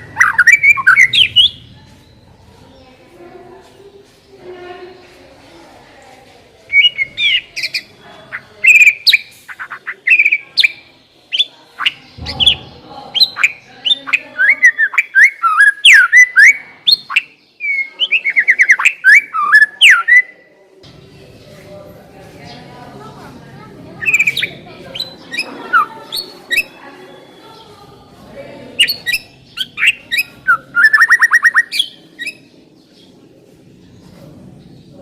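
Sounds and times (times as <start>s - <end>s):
bird singing whistled song: 0.1s - 2.2s, 6.7s - 7.9s, 8.6s - 20.3s, 28.8s - 32.5s
soft low thud: 12.2s - 12.8s.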